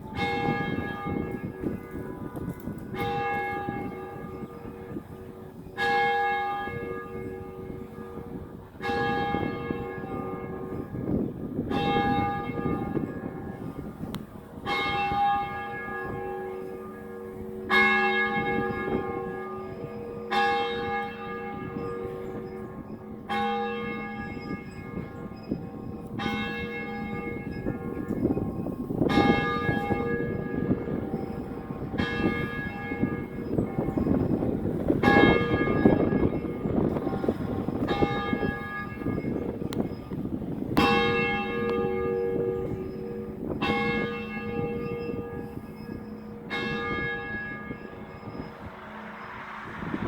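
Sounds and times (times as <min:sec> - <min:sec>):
church bell tolling: 0:00.0 - 0:50.0.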